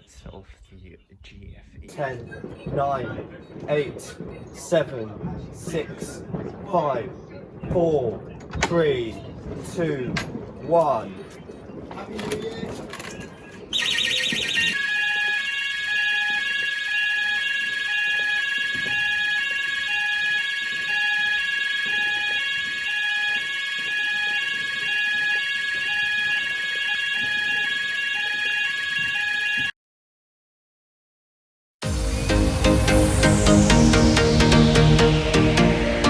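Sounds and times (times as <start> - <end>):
fire alarm sounders: 13.7 - 29.7.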